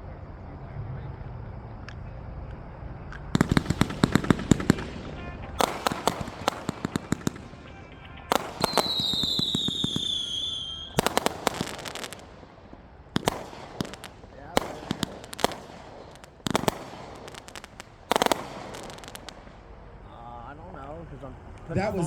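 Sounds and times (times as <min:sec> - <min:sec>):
fireworks rapid bangs: 0:03.2 - 0:20.0
firework whistle: 0:03.4 - 0:19.6.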